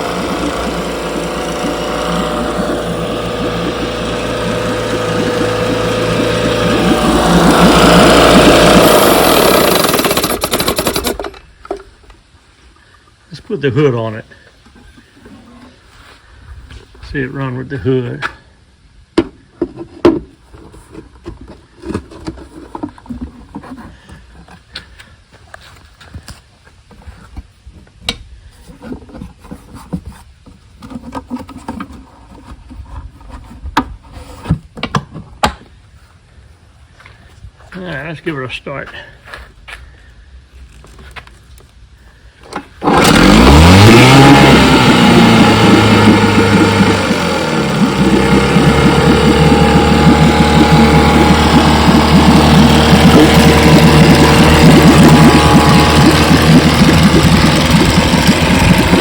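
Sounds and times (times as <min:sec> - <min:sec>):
engine cover knocking and clunking: 0:00.0 - 0:11.5, 0:42.8 - 0:59.0
outboard motor running: 0:00.0 - 0:11.6, 0:42.5 - 0:59.0
scrapes and rattles: 0:19.6 - 0:35.4.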